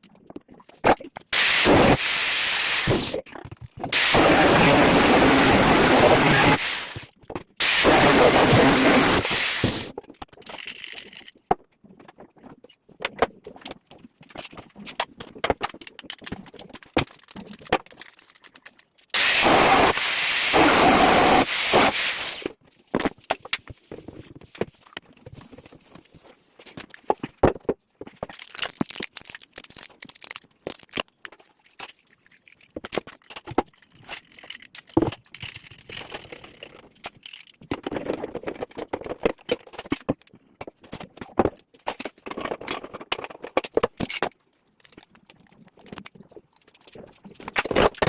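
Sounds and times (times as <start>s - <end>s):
water gushing: 3.9s - 9.9s, 19.2s - 22.5s.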